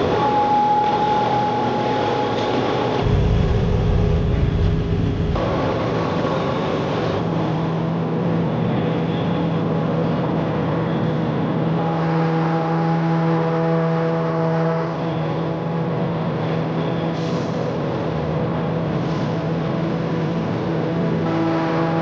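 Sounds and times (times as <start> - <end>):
high whine: 0.0 - 8.0
farm machine engine droning: 0.0 - 9.4.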